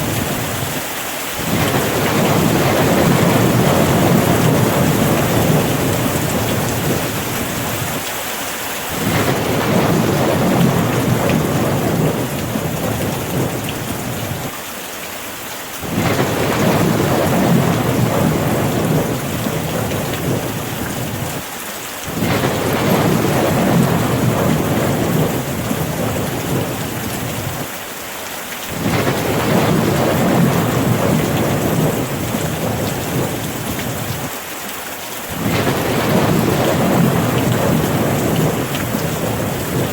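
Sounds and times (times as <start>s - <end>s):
steady rain: 0.0s - 39.9s
rolling thunder: 1.4s - 8.1s, 8.9s - 14.5s, 15.8s - 21.4s, 22.1s - 27.7s, 28.7s - 34.3s, 35.3s - 39.9s.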